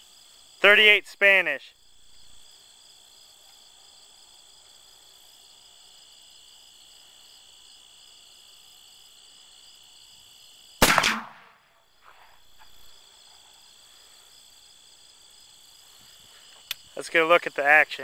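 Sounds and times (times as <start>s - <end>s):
crickets chirping: 0.0s - 18.0s
rifle shot: 10.8s - 12.4s.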